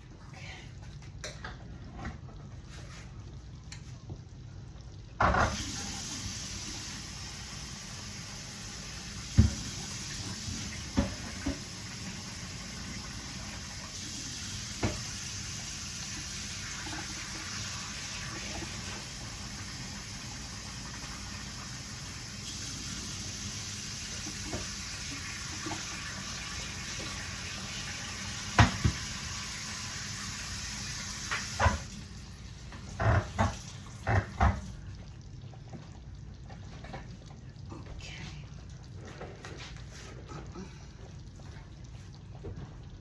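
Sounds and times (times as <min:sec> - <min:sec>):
food sizzling in a pan: 0:05.2 - 0:34.9.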